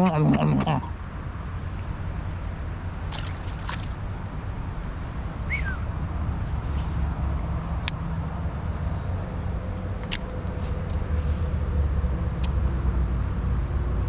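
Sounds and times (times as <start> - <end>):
steady low rumble: 0.0 - 14.0
water sloshing: 1.7 - 4.5.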